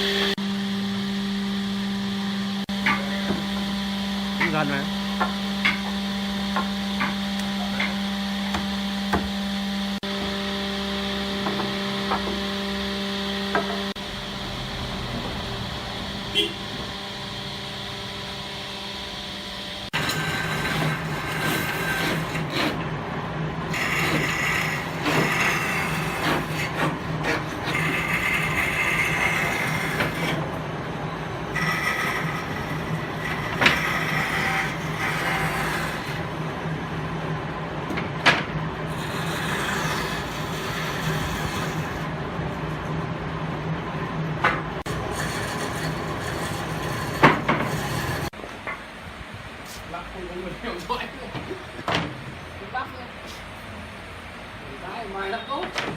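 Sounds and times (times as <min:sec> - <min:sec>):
power tool humming: 0:00.0 - 0:22.8, 0:23.7 - 0:30.6, 0:31.2 - 0:36.4.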